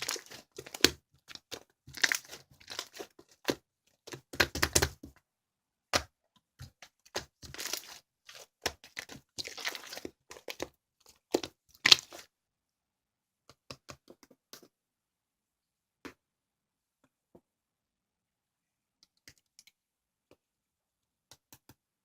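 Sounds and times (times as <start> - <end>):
crinkling and crackling with snaps: 0.0 - 5.2, 6.6 - 12.3.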